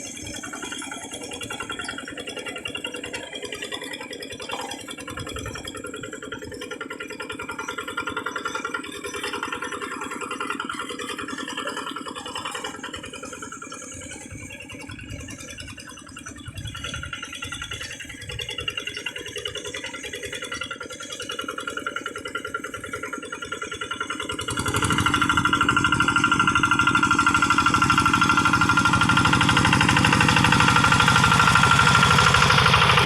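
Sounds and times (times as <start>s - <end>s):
diesel engine running with rattle: 0.0s - 33.0s.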